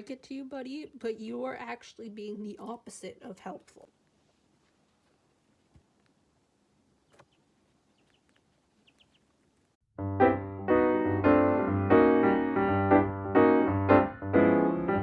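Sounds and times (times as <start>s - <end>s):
piano background music: 10.0s - 15.0s.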